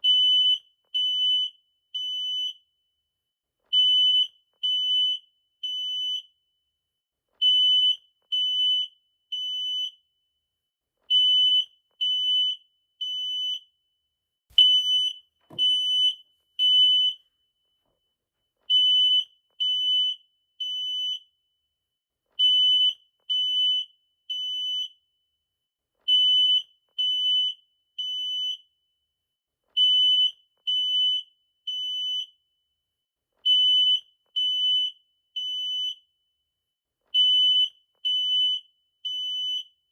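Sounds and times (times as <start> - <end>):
smoke alarm beeping: 0.0 - 3.0, 3.7 - 6.6, 7.4 - 10.3, 11.1 - 17.8, 18.6 - 21.5, 22.4 - 25.2, 26.0 - 28.9, 29.8 - 32.6, 33.4 - 36.3, 37.1 - 39.9.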